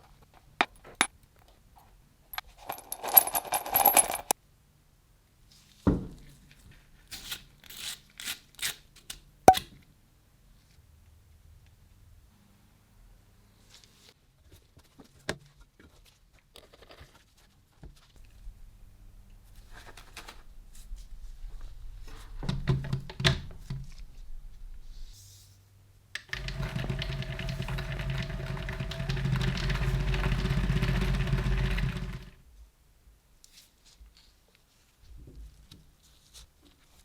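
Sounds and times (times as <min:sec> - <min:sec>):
power tool motor running: 0:26.3 - 0:32.4.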